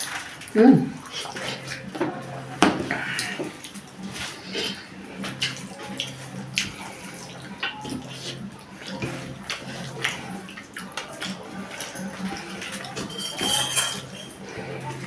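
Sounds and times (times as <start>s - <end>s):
wet chewing and smacking: 0.0s - 15.0s.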